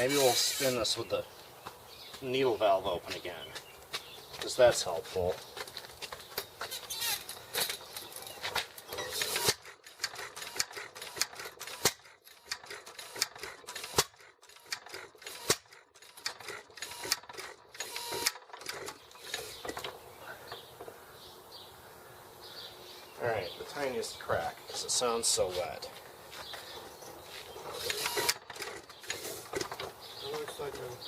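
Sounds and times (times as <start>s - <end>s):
engine parts clicking and clacking: 5.4s - 20.0s, 27.8s - 31.0s.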